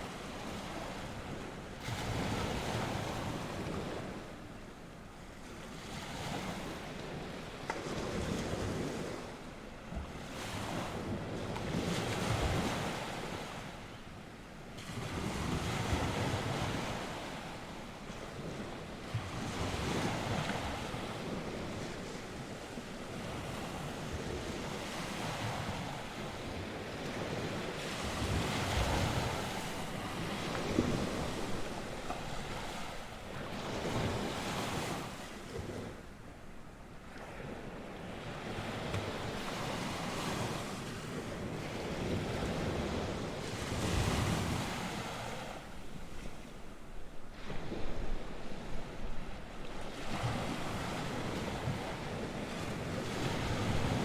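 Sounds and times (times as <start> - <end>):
surf breaking and washing ashore: 0.0 - 54.0
wind rumbling on microphone: 14.8 - 36.0, 37.2 - 54.0.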